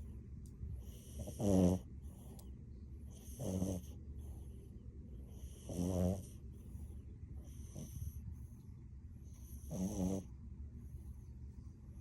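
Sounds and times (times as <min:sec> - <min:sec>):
dog snoring: 0:00.8 - 0:02.4, 0:03.1 - 0:04.5, 0:05.2 - 0:06.8, 0:07.4 - 0:08.2, 0:09.4 - 0:10.4.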